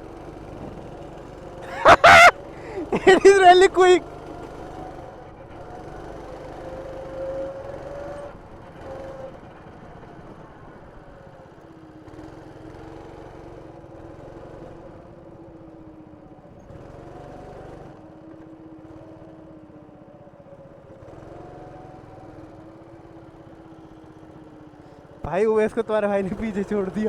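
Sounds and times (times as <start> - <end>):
go-kart engine revving: 26.2 - 27.0.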